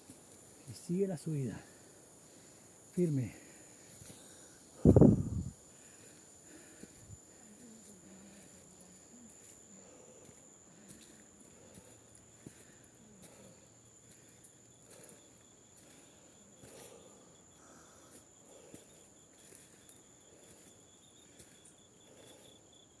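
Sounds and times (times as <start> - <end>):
insects chirring: 0.0 - 23.0
low pulsing insect trill: 0.0 - 23.0.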